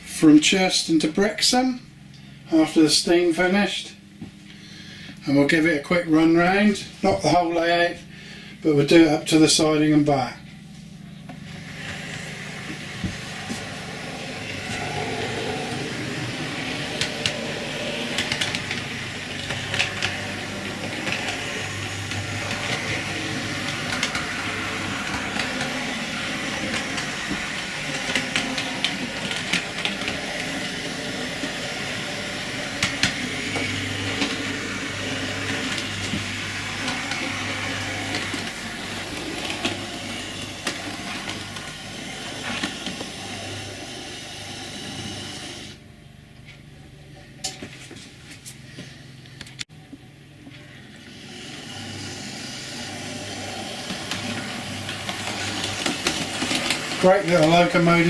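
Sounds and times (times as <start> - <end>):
small electric motor whirring: 11.3 - 45.8, 50.8 - 58.0
model train wheels clicking: 11.7 - 45.8, 51.1 - 58.0.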